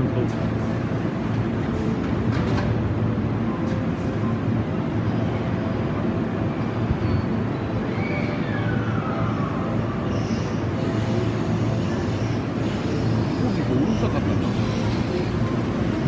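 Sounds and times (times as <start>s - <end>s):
train rumble: 0.0s - 16.0s.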